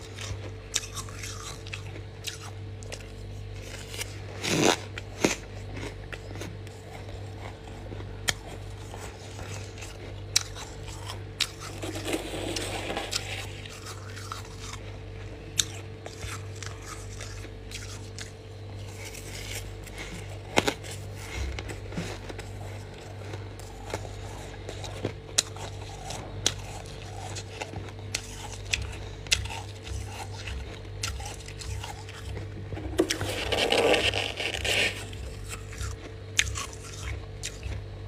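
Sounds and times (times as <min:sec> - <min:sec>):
crunching and chewing frost: 0:00.0 - 0:38.0
low hum: 0:00.0 - 0:38.0.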